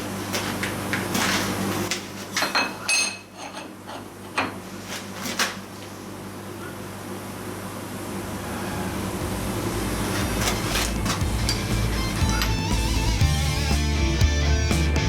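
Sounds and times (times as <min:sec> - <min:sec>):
milling machine motor humming: 0:07.8 - 0:15.0.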